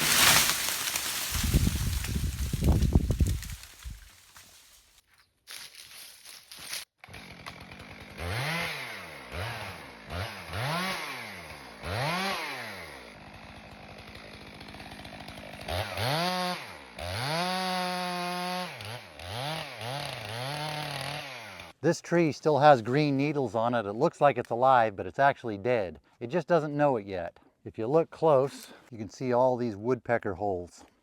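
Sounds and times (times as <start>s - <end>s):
chainsaw engine revving: 7.0s - 21.8s.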